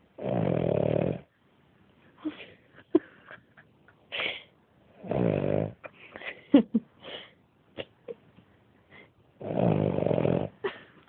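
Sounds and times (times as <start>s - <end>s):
dog snoring: 0.2s - 1.3s, 4.9s - 5.8s, 9.4s - 10.6s.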